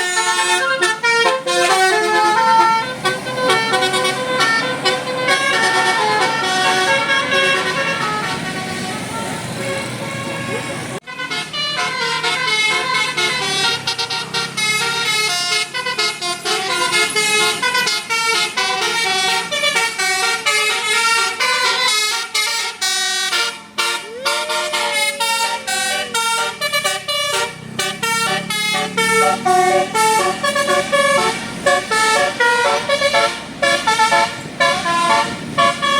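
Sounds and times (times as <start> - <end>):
bus horn playing fast melody: 0.0 - 35.9.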